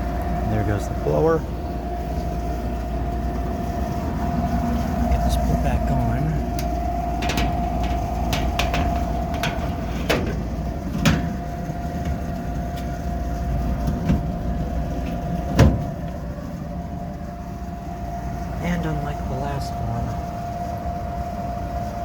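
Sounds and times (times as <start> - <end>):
furnace motor humming: 0.0 - 22.0
sheet metal clicks and knocks: 6.6 - 11.3.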